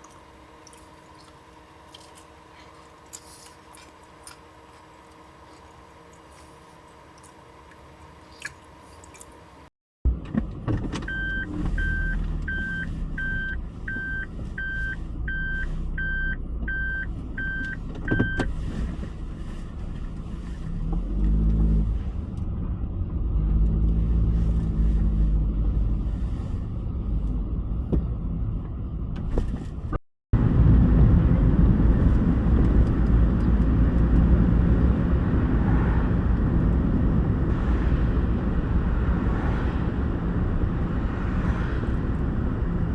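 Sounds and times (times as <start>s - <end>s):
car engine and road hum: 0.0s - 42.9s
low rumble: 18.5s - 42.9s.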